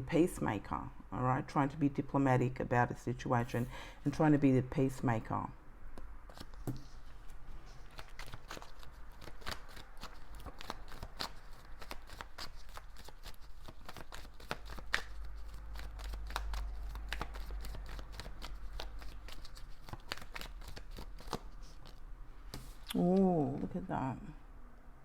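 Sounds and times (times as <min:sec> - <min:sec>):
cards being shuffled by hand: 0:06.3 - 0:23.6.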